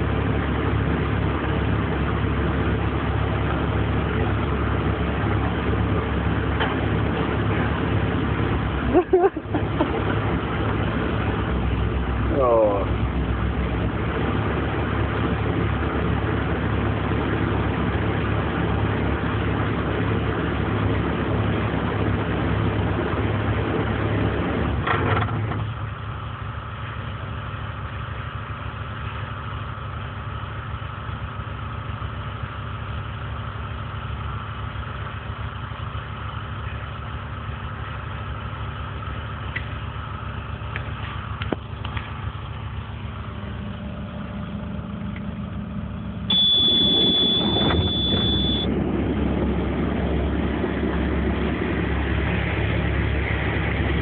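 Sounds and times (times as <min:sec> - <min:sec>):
engine running: 0:00.0 - 0:54.0
engine clunk: 0:00.2 - 0:25.9, 0:36.5 - 0:54.0.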